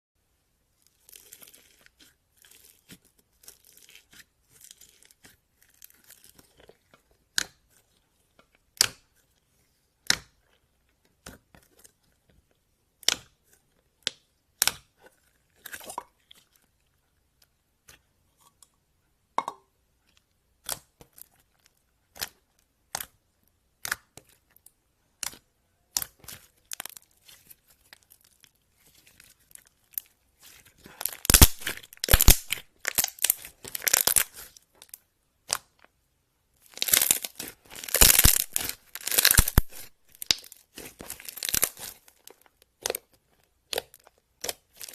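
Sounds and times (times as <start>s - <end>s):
slime popping and crackling: 0.9s - 6.6s, 22.1s - 35.8s, 36.6s - 44.9s.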